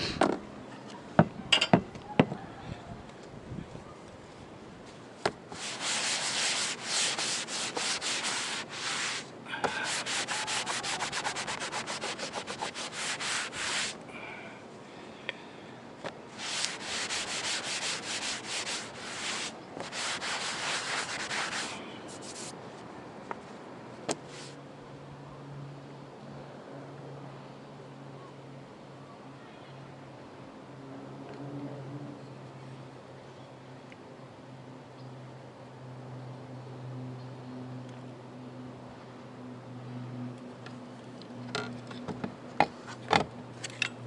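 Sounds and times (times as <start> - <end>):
cable jacket scraping through opening: 5.5 - 14.0, 16.3 - 22.5.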